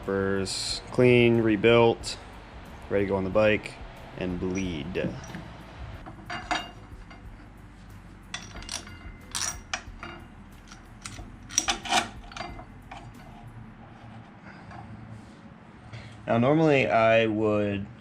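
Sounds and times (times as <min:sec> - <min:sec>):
metal tools clinking and clanking: 0:04.5 - 0:05.4, 0:06.0 - 0:07.6, 0:08.2 - 0:13.6.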